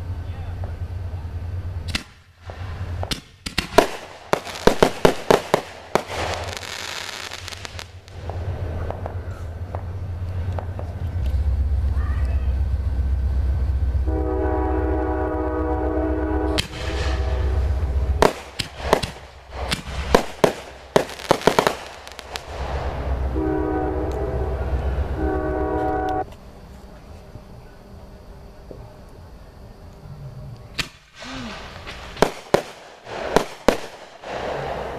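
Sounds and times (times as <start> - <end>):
deep rumble: 0.0 - 3.2, 7.4 - 32.2
fireworks bangs and crackles: 1.8 - 12.7, 16.5 - 23.4, 30.7 - 34.9
train horn blasts: 14.0 - 18.2, 22.9 - 26.3.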